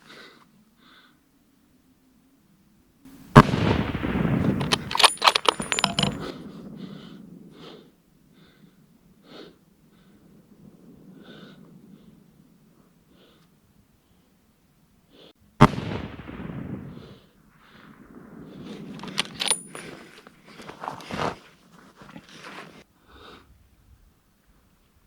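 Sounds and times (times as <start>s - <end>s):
rifle shot with long echo: 3.1s - 7.8s, 15.5s - 20.0s.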